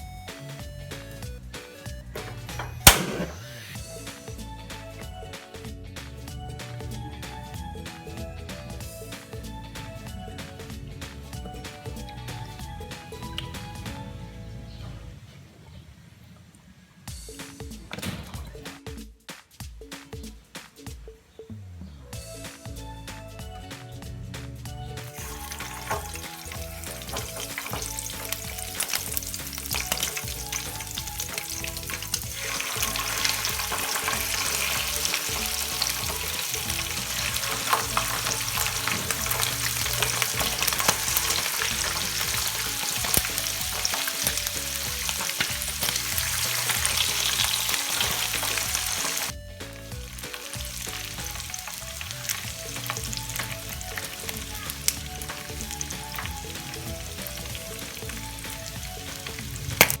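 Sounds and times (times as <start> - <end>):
meat deep-frying in hot oil: 24.9 - 60.0.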